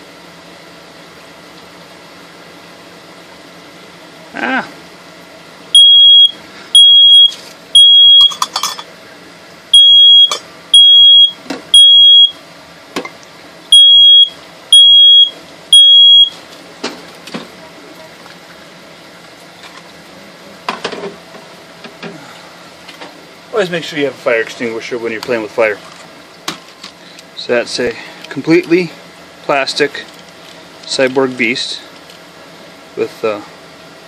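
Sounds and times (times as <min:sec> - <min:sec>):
smoke alarm beeping: 0:05.7 - 0:08.4, 0:09.7 - 0:12.4, 0:13.7 - 0:16.4.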